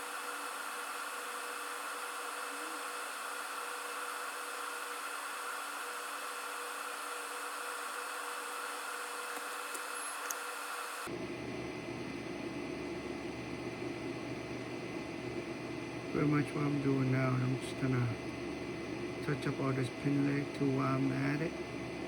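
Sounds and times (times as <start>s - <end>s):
steady hiss: 0.0s - 11.1s
faint whining tones: 0.0s - 22.0s.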